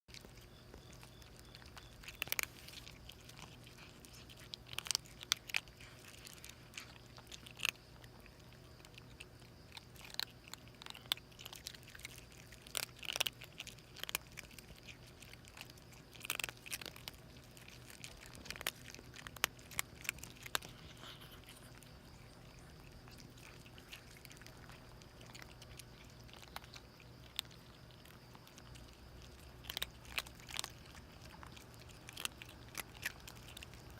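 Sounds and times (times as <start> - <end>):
cats chewing food: 0.0 - 33.9.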